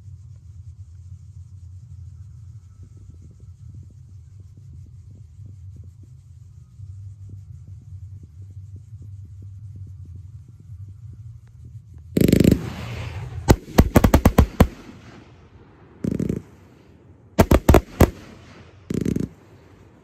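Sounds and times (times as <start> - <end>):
low steady hum: 0.0 - 20.0
firework boom with rumble: 12.2 - 16.6
sharp firework bangs: 12.2 - 20.0.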